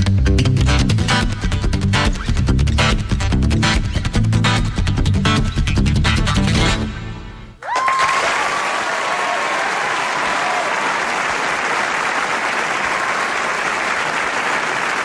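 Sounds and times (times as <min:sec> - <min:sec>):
audience applauding: 0:07.6 - 0:15.0.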